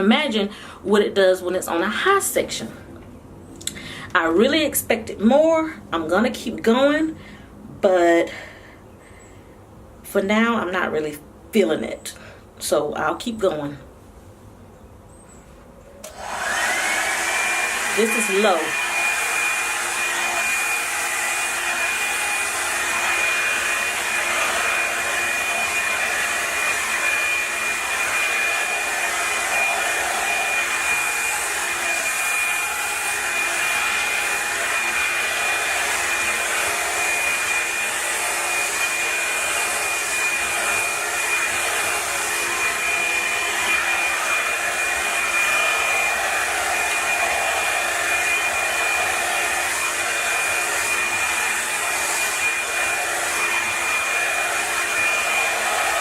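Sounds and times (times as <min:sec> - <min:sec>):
brush through hair: 0:16.0 - 0:56.0
hot-air brush dryer whine: 0:16.0 - 0:56.0.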